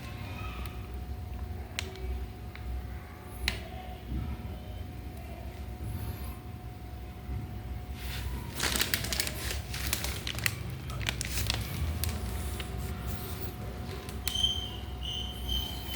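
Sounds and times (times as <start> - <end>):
plastic packaging crinkling: 8.0 - 14.8.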